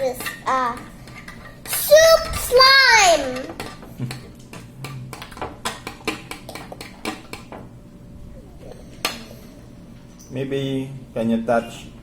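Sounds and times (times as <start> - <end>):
utensil clinking against bowl: 0.0 - 2.6.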